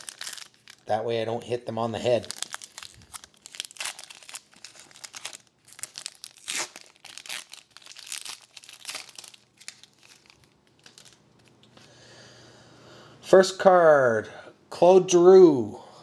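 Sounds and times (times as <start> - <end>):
wrapper tearing and crinkling: 0.0 - 1.0, 1.9 - 11.7.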